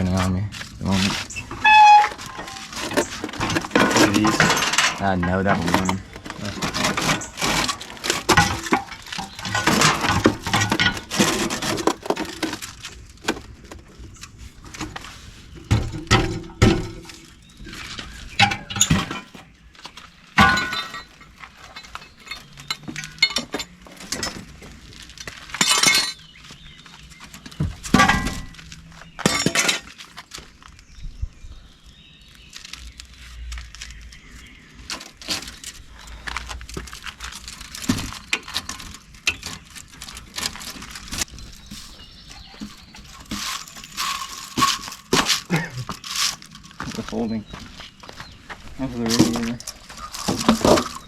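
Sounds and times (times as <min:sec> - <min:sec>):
metal clanking and banging: 0:00.0 - 0:12.7, 0:15.6 - 0:17.4, 0:18.3 - 0:19.5, 0:20.3 - 0:24.7, 0:27.6 - 0:28.6, 0:29.2 - 0:30.0.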